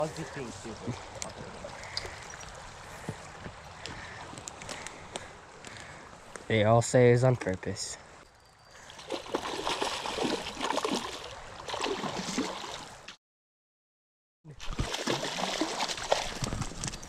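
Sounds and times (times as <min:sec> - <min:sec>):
creek water splashing and gurgling: 0:00.0 - 0:06.3, 0:08.8 - 0:13.1, 0:14.5 - 0:17.0.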